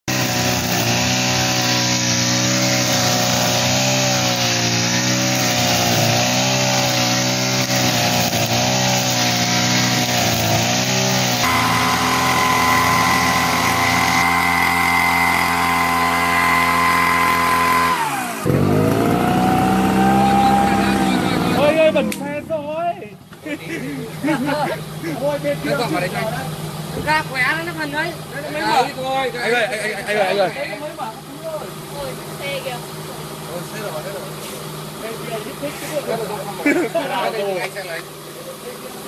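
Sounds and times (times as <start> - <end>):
brush cutter engine running: 0.1 - 22.7.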